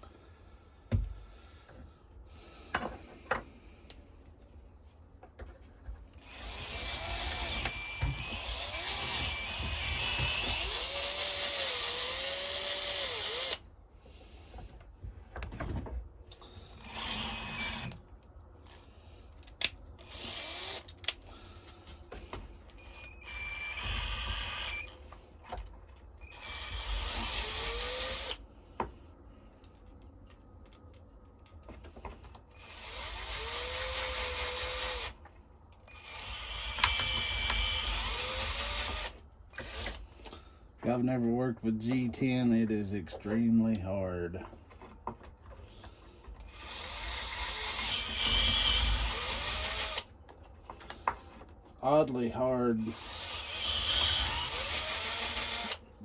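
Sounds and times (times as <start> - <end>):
power drill drilling: 6.2 - 13.6, 16.5 - 18.0, 19.6 - 21.4, 22.2 - 25.2, 26.2 - 28.4, 32.6 - 35.2, 35.9 - 40.3, 46.4 - 50.1, 52.8 - 55.8.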